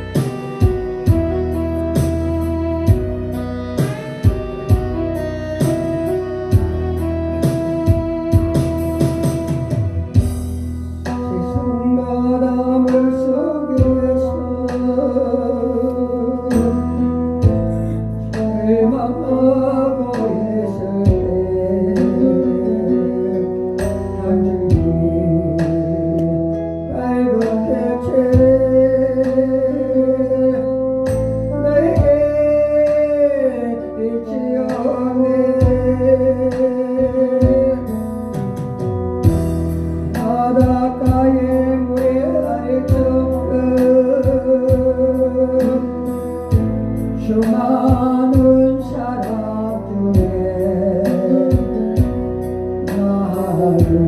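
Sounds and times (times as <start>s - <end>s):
guitar accompaniment: 0.0s - 54.0s
person singing a hymn: 11.2s - 30.9s, 31.5s - 38.0s, 40.1s - 46.4s, 47.2s - 51.8s, 52.8s - 54.0s.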